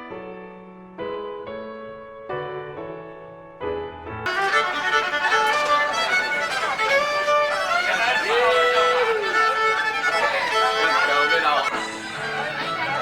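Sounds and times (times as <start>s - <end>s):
sliding violin-like lead melody: 4.3s - 13.0s.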